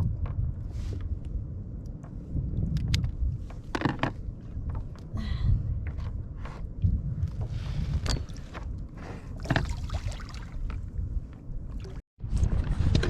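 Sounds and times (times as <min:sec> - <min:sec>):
wind rumble on microphone: 0:00.0 - 0:13.0
water sloshing around a kayak: 0:07.4 - 0:12.0.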